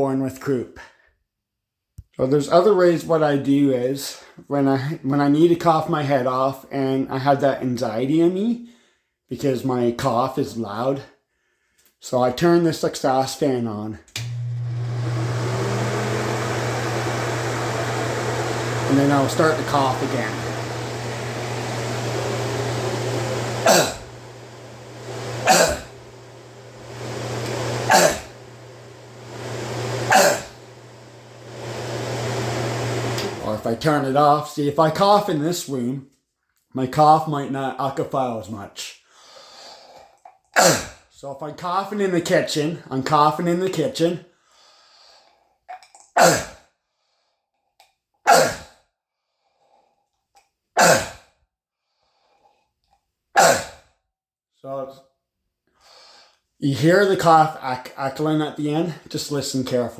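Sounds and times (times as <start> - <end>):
kitchen exhaust fan hum: 14.2 - 34.1
man's barking cough: 46.2 - 46.6, 48.3 - 48.7, 50.8 - 51.2, 53.4 - 53.8.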